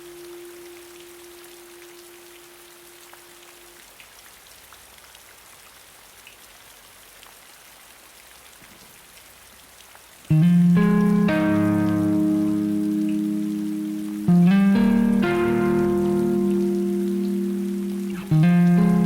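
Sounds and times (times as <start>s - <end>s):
steady rain: 0.0s - 19.0s
raindrops ticking: 9.7s - 19.0s
held guitar note: 10.3s - 19.0s.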